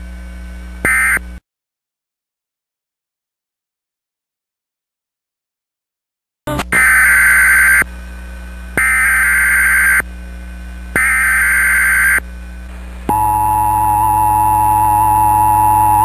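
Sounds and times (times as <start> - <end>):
buzzy digital data bursts: 8.8 - 10.1, 11.0 - 12.2
two-tone attention signal: 13.1 - 16.0.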